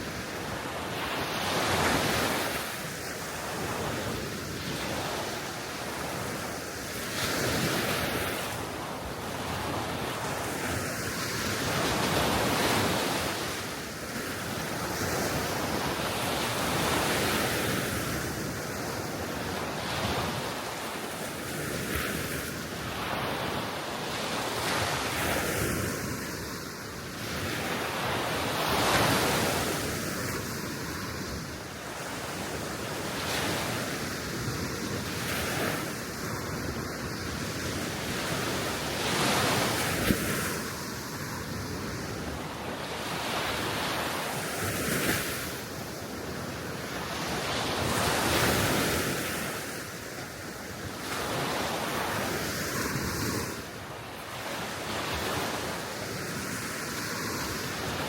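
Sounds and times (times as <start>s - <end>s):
small waves washing onto shore: 0.0s - 58.0s.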